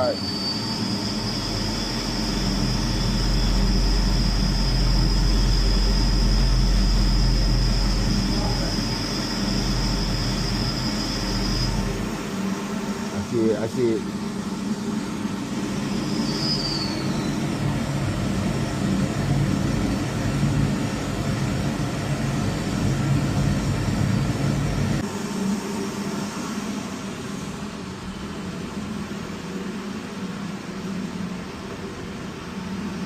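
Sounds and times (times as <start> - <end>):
brief high squeak: 0.0 - 6.9, 15.9 - 17.5
boiler burner roaring: 0.0 - 33.0.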